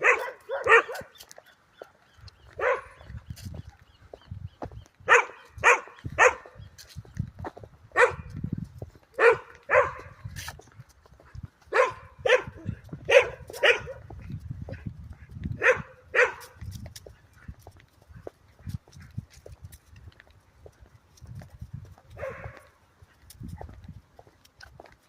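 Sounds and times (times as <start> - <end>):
dog barking: 0.0 - 1.2, 2.5 - 3.1, 5.1 - 6.6, 8.0 - 8.4, 9.2 - 10.3, 11.7 - 14.2, 15.6 - 16.6, 22.2 - 22.8.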